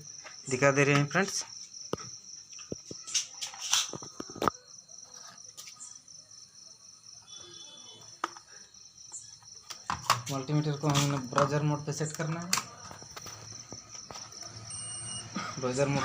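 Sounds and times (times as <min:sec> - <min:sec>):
multimeter probes clicking: 0:10.8 - 0:14.5.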